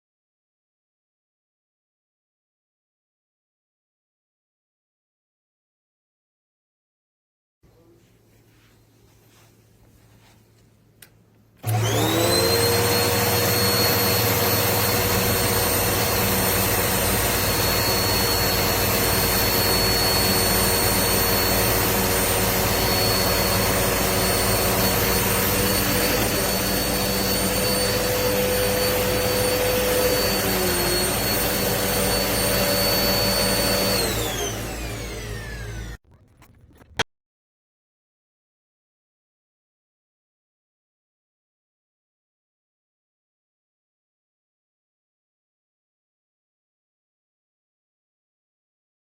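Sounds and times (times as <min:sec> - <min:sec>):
vacuum cleaner motor whine: 0:11.6 - 0:36.0.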